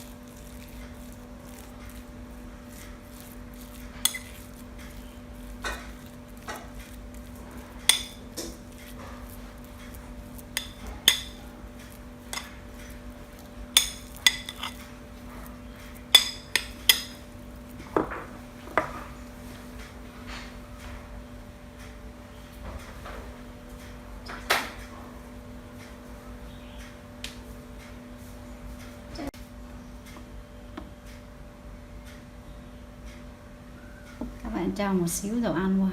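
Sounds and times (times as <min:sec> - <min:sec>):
steady low hum: 0:00.0 - 0:35.9
utensils clinking against dishes: 0:03.2 - 0:07.0, 0:07.6 - 0:17.3.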